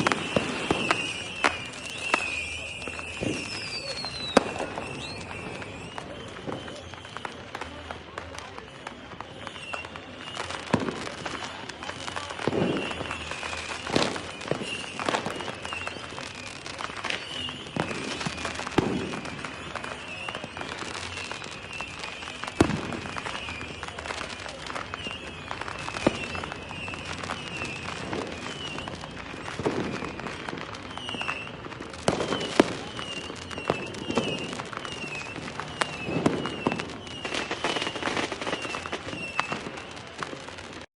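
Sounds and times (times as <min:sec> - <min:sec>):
fireworks bangs and crackling: 0:00.0 - 0:40.9
high chirping whistles: 0:00.1 - 0:07.0.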